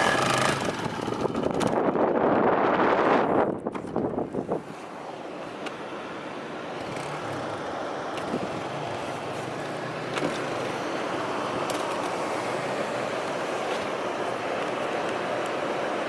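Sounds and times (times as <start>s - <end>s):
quad bike engine running: 0.0s - 2.2s
steady rushing haze: 4.4s - 16.0s.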